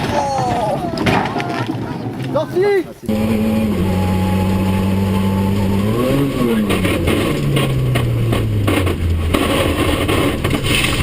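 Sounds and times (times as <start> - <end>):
car engine running: 3.1 - 11.0
sharp knocks and clatter: 6.4 - 11.0.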